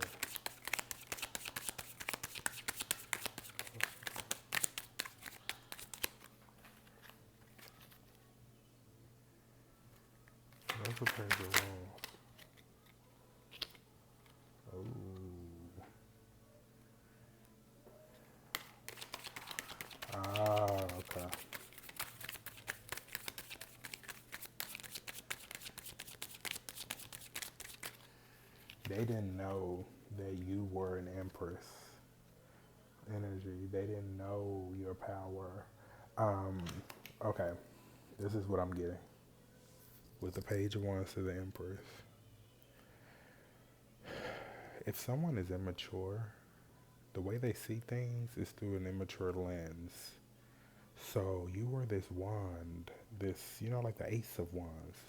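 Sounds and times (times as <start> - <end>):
cards being shuffled: 0.0 - 8.2, 10.5 - 14.4, 18.5 - 29.2.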